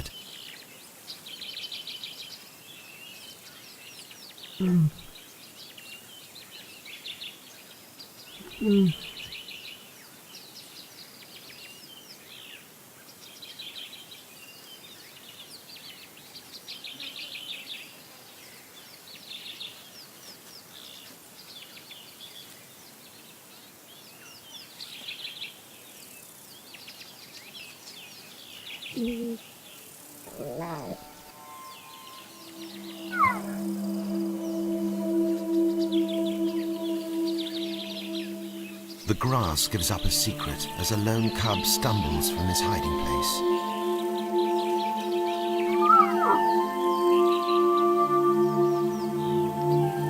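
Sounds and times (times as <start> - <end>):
birds chirping and trilling: 0.0 - 12.5, 26.6 - 50.0
low animal calls: 4.6 - 5.2, 8.4 - 9.3, 30.2 - 38.8, 45.7 - 46.8
steady background hiss: 25.8 - 50.0.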